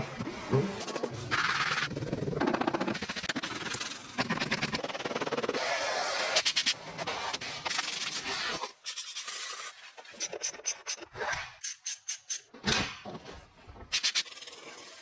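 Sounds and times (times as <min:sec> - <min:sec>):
filing rusty metal: 0:09.1 - 0:12.5.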